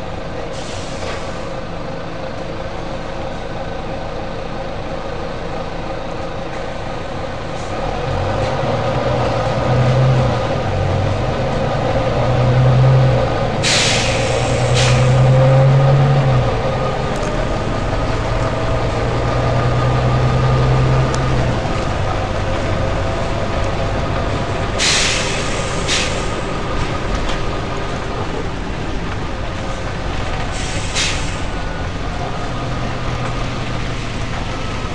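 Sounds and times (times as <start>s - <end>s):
bus engine running: 0.0s - 34.9s
compressed air hisses: 13.6s - 15.3s, 24.8s - 26.5s, 30.5s - 31.5s.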